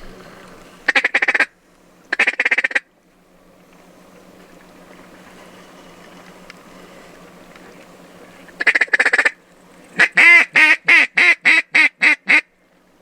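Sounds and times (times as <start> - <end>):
duck call chattering notes: 0.9 - 1.5, 2.1 - 2.9, 8.6 - 9.4, 10.0 - 12.5
duck call quacks: 0.9 - 1.5, 2.1 - 2.9, 8.6 - 9.4, 10.0 - 12.5.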